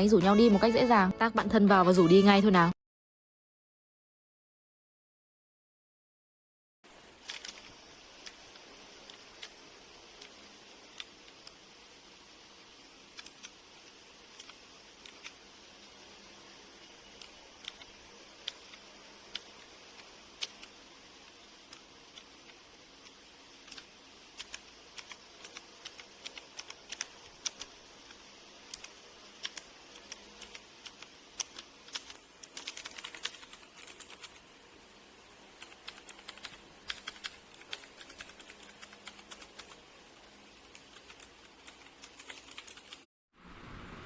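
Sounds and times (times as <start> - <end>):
clicky mechanical keyboard typing: 7.2 - 9.6, 13.1 - 13.6, 14.3 - 15.4, 17.1 - 20.8, 21.7 - 34.4, 35.6 - 39.8, 40.7 - 43.0.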